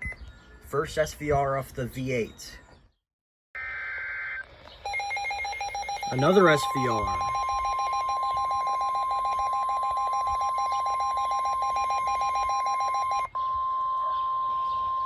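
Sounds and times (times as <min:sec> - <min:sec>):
rapid pulsing beep: 0:04.9 - 0:13.3
steady warning tone: 0:04.9 - 0:13.8.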